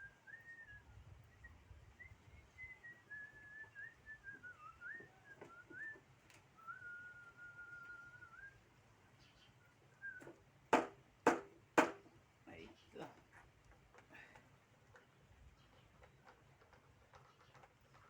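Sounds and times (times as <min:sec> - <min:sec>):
person whistling a tune: 0:02.0 - 0:06.0, 0:06.6 - 0:08.6
sharp knock: 0:10.7 - 0:12.0.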